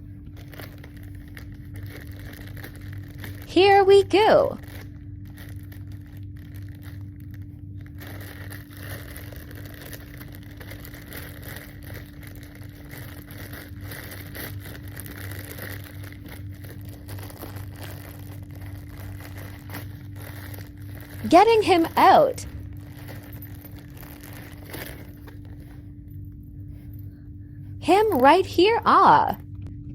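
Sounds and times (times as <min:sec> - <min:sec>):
steady low hum: 0:00.0 - 0:29.9
packaging crinkling and tearing: 0:00.3 - 0:03.5, 0:04.5 - 0:25.9.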